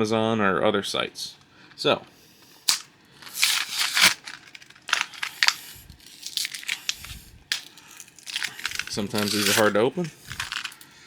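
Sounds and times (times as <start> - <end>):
packaging crinkling and tearing: 2.6 - 10.9.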